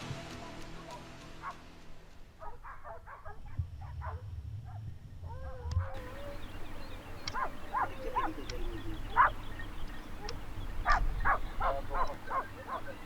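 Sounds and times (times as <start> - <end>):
low rumble: 0.0 - 6.9
dogs yelping and baying: 2.4 - 13.0.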